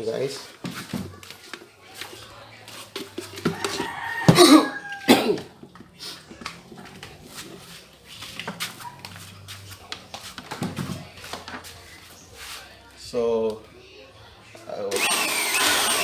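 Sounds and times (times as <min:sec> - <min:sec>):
dog barking: 0:08.6 - 0:09.2.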